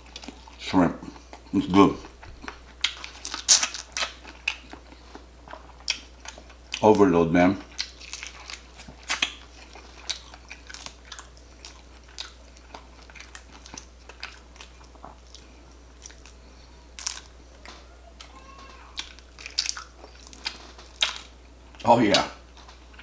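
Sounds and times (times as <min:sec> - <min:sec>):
biting and wet chewing: 0:00.0 - 0:23.0
mouth clicks and smacks: 0:07.8 - 0:09.4.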